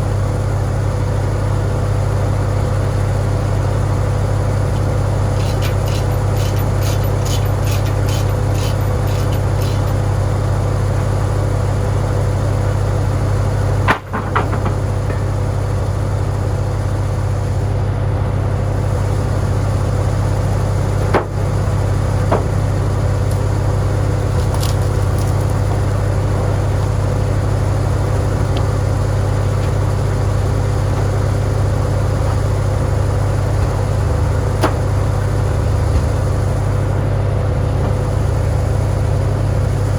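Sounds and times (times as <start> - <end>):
tractor engine running: 0.0 - 39.9
sharp knocks: 5.4 - 10.1, 13.9 - 15.3.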